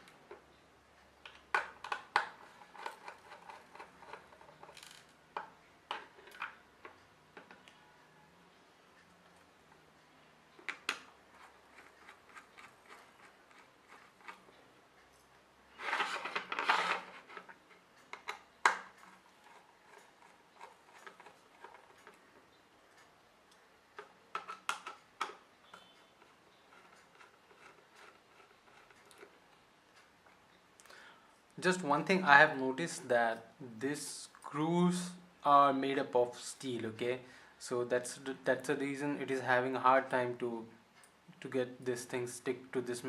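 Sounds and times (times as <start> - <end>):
screwdriver clicks and scrapes: 1.3 - 6.6, 10.6 - 14.6, 15.8 - 22.2, 24.0 - 29.4.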